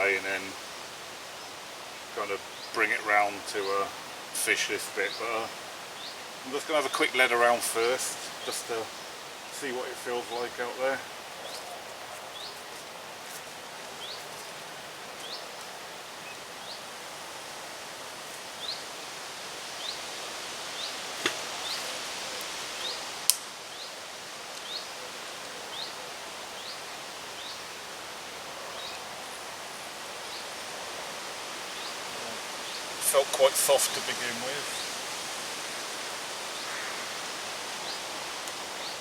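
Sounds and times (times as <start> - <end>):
outdoor background noise: 0.0 - 39.0
bird chirping: 2.2 - 12.9, 14.0 - 14.6, 15.2 - 16.9, 20.8 - 23.1, 25.6 - 27.7.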